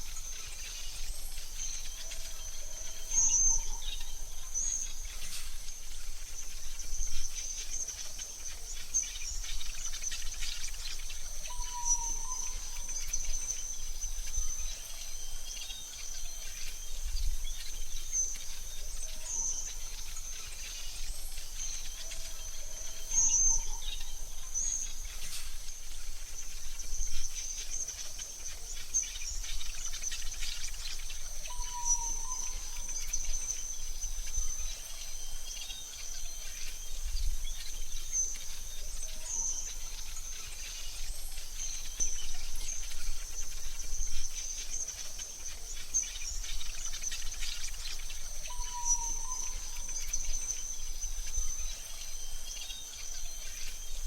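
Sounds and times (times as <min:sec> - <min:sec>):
bird chirps: 0:00.0 - 0:54.0
high-pitched insect trill: 0:00.0 - 0:54.0.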